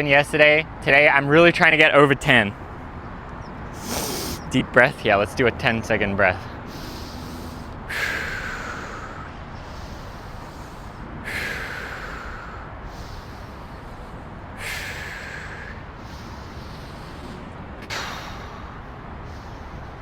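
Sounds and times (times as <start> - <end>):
man breathing deeply: 3.6 - 4.5, 6.6 - 20.0.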